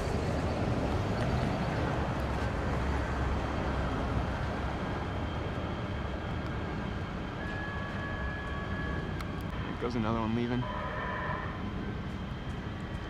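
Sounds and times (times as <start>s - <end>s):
light rail train rumbling: 0.0s - 13.0s
road traffic: 0.0s - 13.0s
faint thin whining tones: 5.2s - 13.0s.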